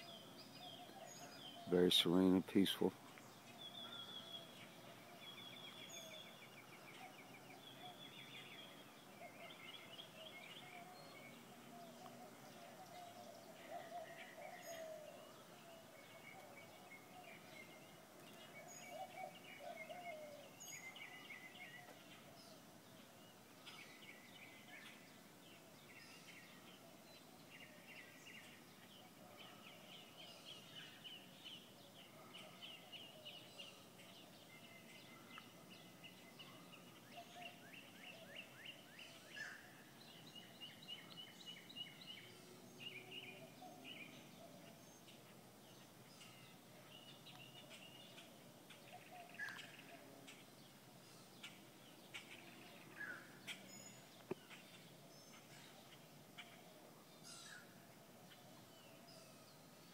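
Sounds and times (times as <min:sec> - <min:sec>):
songbirds chirping and trilling: 0:00.0 - 0:59.9
doves cooing: 0:09.1 - 0:22.6.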